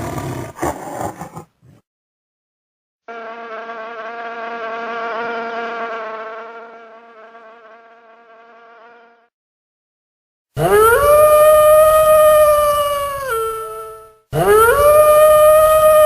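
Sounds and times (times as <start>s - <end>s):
flying insect buzzing: 3.1s - 9.3s
loud howl: 10.6s - 16.0s.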